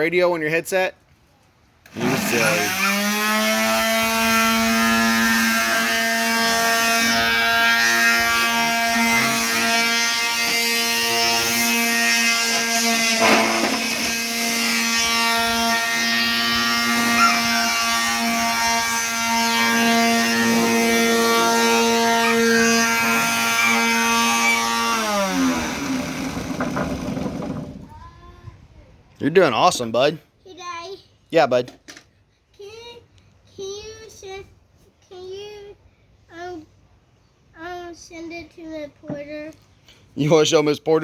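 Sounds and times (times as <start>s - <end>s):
electric sander whining: 1.9s - 27.8s.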